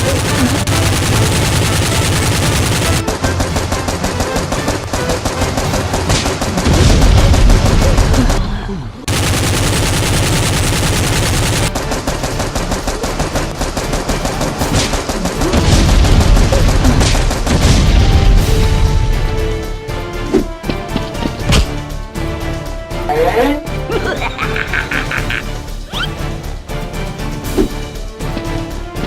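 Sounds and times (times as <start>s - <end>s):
machine-gun fire: 0.0s - 8.4s, 9.1s - 18.6s.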